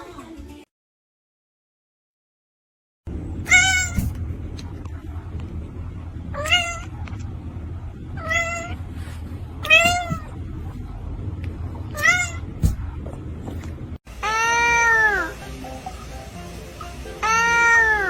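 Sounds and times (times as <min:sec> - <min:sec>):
steady low hum: 0:03.1 - 0:14.2
cat meowing: 0:03.4 - 0:04.2, 0:06.3 - 0:07.0, 0:08.2 - 0:08.8, 0:09.6 - 0:10.4, 0:11.9 - 0:12.7, 0:14.2 - 0:15.4, 0:17.2 - 0:18.0.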